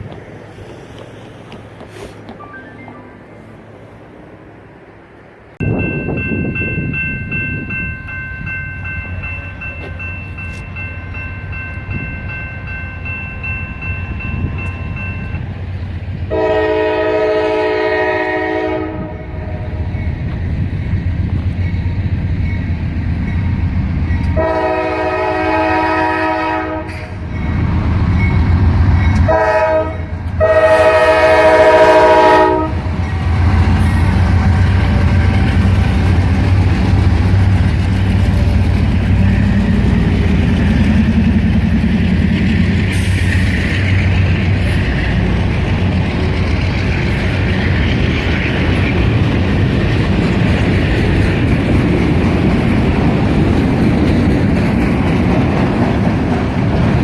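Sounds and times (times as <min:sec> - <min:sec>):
passing train rumble: 0:00.0 - 0:57.0
locomotive air horn: 0:16.3 - 0:19.9, 0:24.3 - 0:27.2, 0:29.2 - 0:35.5.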